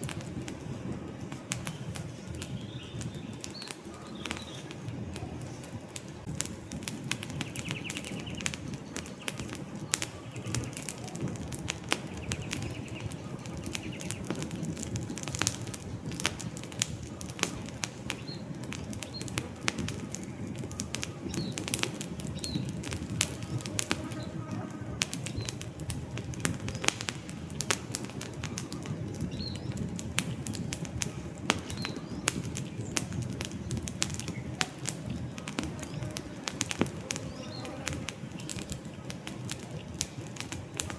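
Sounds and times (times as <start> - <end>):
campfire crackling and popping: 0.0 - 40.9
rush of burning flames: 0.0 - 40.9
faint bird chirps: 12.0 - 14.7.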